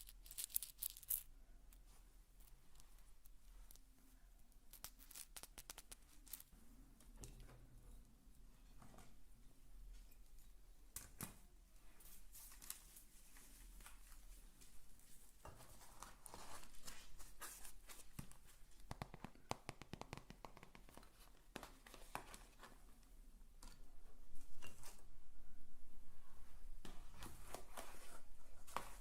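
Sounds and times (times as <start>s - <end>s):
scratching and rustling on object: 12.0s - 18.6s, 27.1s - 29.0s.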